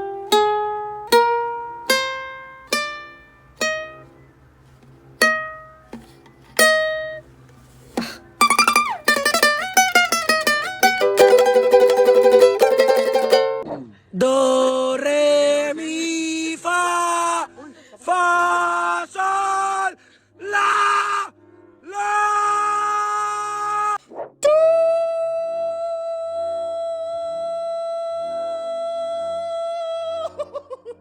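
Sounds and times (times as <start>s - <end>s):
plucked string instrument: 0.0s - 13.7s.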